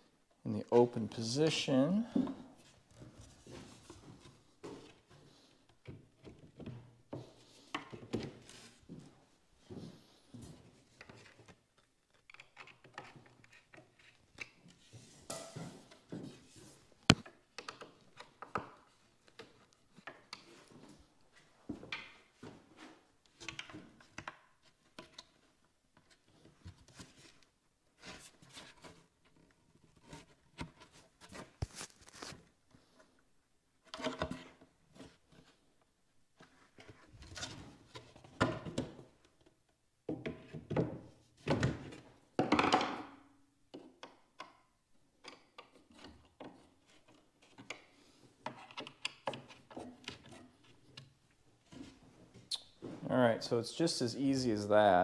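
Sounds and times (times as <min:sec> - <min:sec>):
scraping and handling noises: 0:26.0 - 0:33.2.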